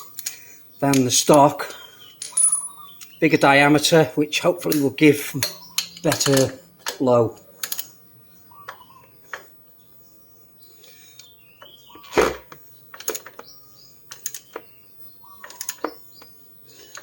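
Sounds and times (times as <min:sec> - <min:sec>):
faint birds chirping: 0:00.0 - 0:17.0
socket wrench clicking: 0:05.4 - 0:07.0, 0:07.6 - 0:07.9.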